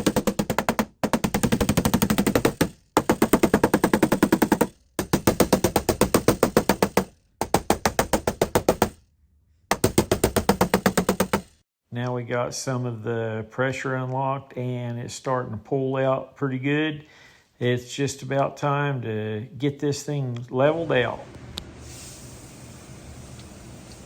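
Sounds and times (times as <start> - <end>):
rapid tapping on sheet metal: 0.0 - 9.0, 9.7 - 11.6.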